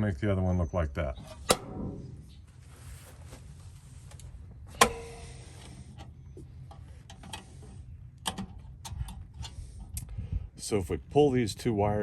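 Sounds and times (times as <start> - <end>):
low steady rumble: 0.0 - 12.0
metal fuel door snapping: 4.8 - 5.3.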